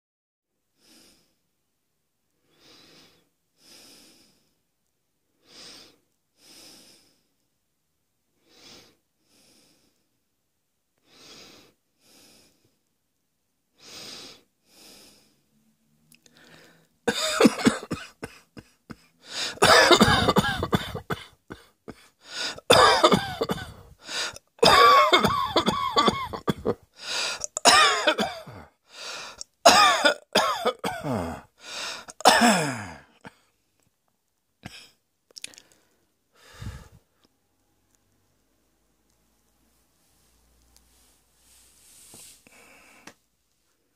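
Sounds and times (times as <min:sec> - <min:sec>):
person coughing: 0:17.1 - 0:22.0, 0:22.6 - 0:26.8, 0:27.4 - 0:28.6, 0:29.6 - 0:33.4.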